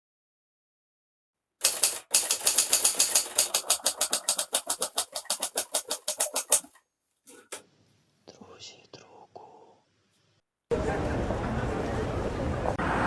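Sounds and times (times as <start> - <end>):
fast typewriter key strikes: 1.6 - 6.7.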